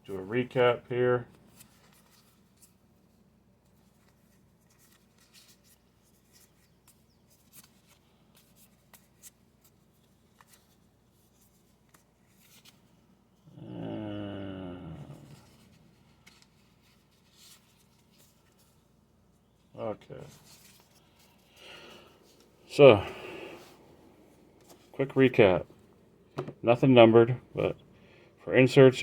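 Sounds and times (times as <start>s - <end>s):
cards rustling and clicking: 1.4s - 13.1s, 15.1s - 19.0s
low groan: 13.5s - 15.6s.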